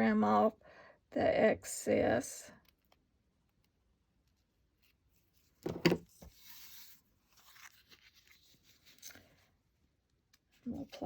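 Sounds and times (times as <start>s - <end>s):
ribbon and card rustling: 4.6s - 9.6s.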